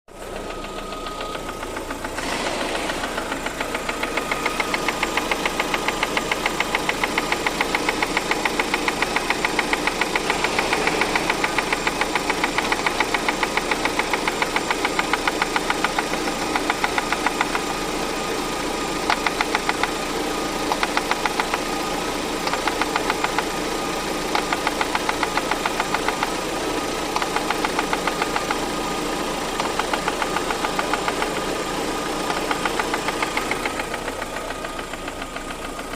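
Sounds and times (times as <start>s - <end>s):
car engine with metallic knock: 0.1s - 35.9s.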